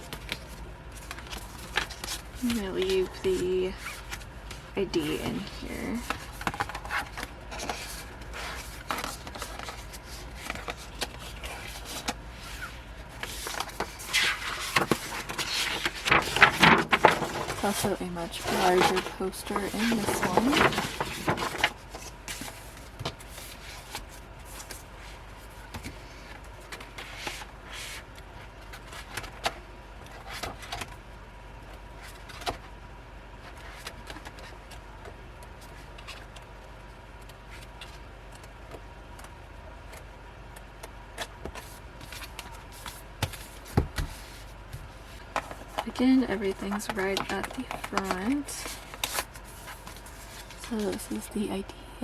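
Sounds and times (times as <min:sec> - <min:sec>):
paper and card rustling: 0:00.0 - 0:31.0, 0:41.2 - 0:51.4.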